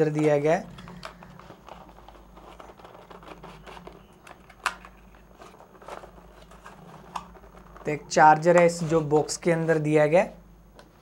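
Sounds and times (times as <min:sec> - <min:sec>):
packaging rustling and crinkling: 0:00.2 - 0:09.5.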